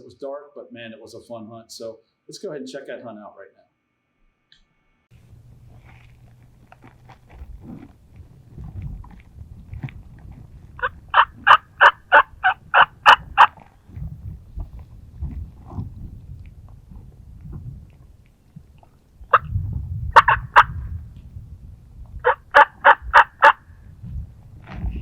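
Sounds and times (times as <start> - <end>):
turkey yelping: 10.8 - 13.6, 20.2 - 20.8, 22.2 - 23.6.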